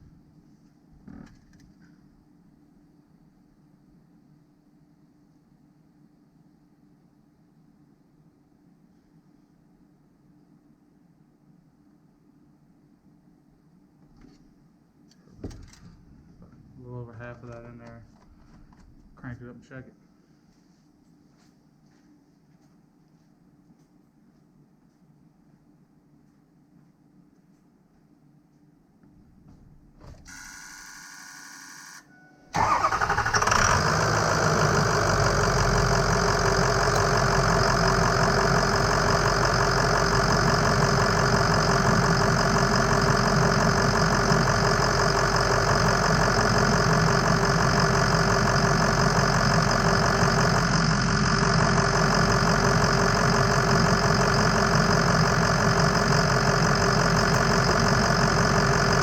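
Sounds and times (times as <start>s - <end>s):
starter motor whine: 30.0s - 59.0s
truck engine idling: 32.6s - 59.0s.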